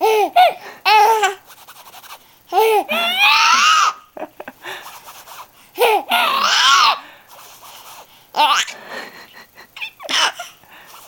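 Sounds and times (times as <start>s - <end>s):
baby laughing and squealing: 0.0s - 1.4s, 2.5s - 4.1s, 5.8s - 7.0s, 8.4s - 8.8s, 9.7s - 10.6s.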